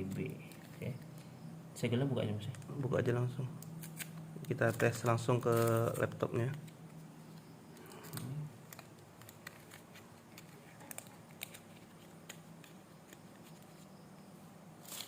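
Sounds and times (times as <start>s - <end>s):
plastic packaging clicks and crinkles: 2.3s - 3.0s, 3.6s - 13.9s.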